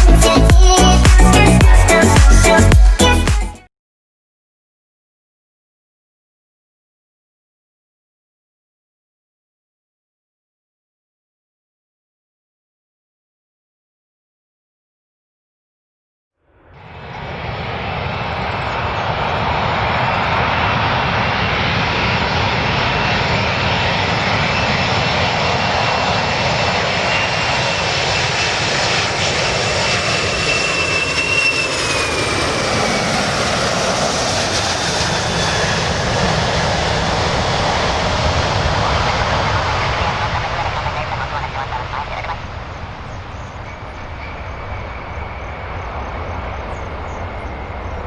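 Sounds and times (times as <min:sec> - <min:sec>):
airplane engines with high whine: 0:16.6 - 0:48.0.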